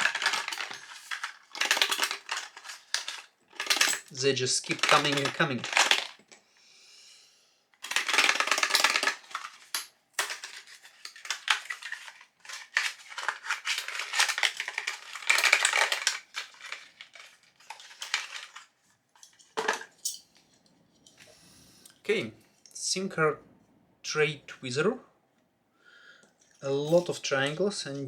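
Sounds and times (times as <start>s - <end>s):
tools clinking: 0.0s - 6.1s, 19.2s - 21.2s, 26.3s - 27.6s
packaging rustling: 0.0s - 6.2s, 7.8s - 20.0s.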